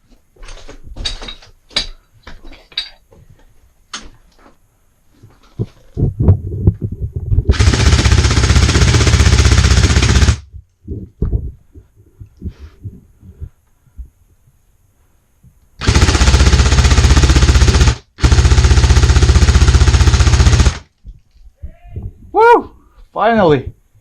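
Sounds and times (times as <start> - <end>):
airsoft gun full-auto burst: 7.5 - 10.4, 15.8 - 20.9.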